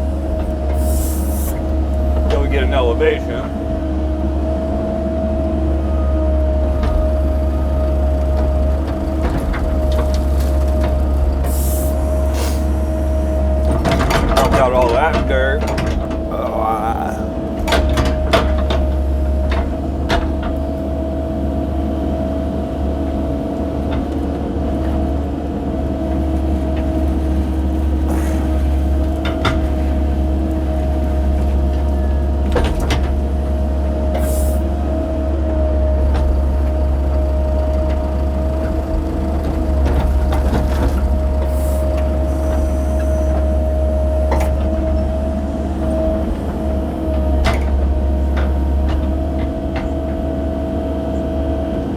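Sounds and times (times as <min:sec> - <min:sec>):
excavator engine running: 0:00.0 - 0:51.9.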